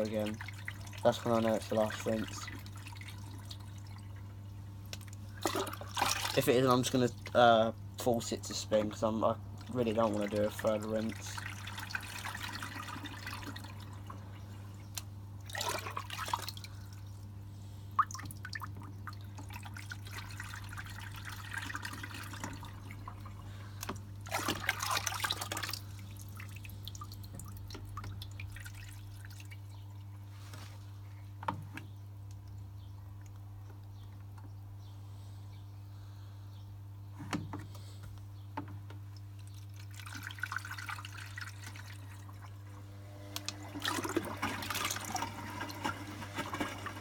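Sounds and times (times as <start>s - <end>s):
water trickling in washing machine drum: 0.0s - 17.3s, 18.0s - 30.3s, 39.0s - 42.6s, 43.6s - 47.0s.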